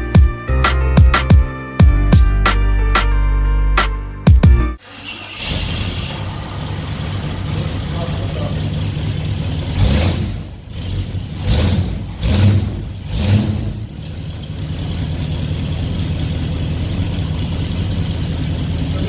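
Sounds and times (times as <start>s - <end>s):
car engine revving then idling: 4.8s - 19.0s.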